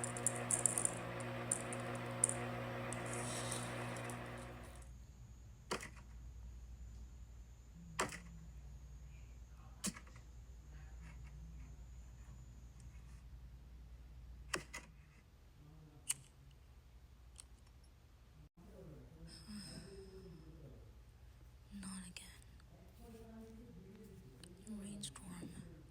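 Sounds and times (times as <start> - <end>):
room hum: 0.0 - 5.4.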